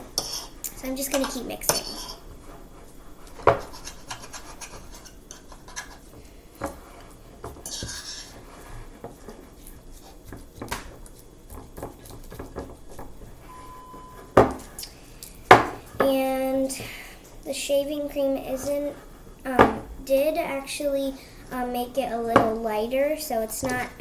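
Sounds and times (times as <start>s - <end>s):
utensil scraping a mixing bowl: 0.0s - 14.2s.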